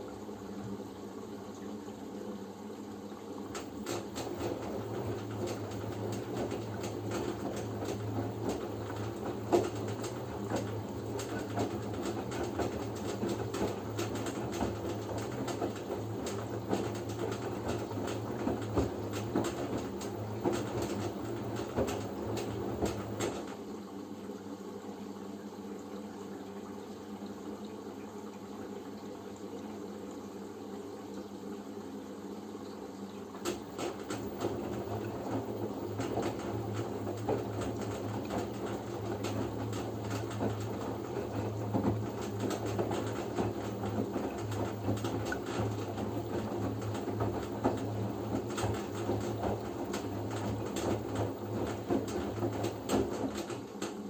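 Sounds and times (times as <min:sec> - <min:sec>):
washing machine hum: 0:00.0 - 0:54.0
water running: 0:00.0 - 0:54.0.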